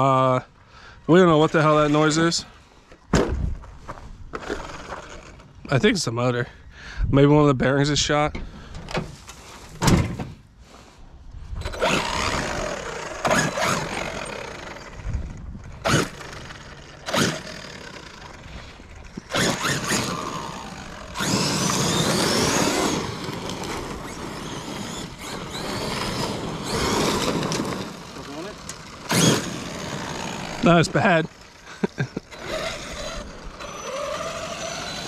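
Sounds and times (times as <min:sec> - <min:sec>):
electric motor whining: 0:11.6 - 0:35.0.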